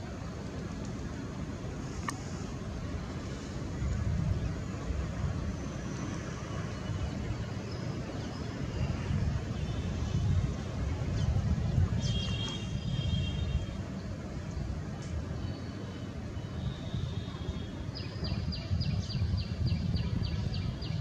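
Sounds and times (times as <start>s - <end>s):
distant traffic rumble: 0.0s - 21.0s.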